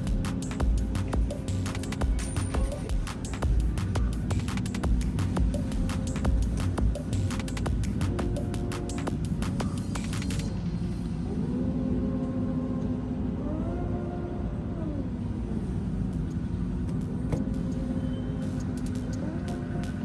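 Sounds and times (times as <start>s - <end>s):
slow sliding background music: 0.0s - 20.0s.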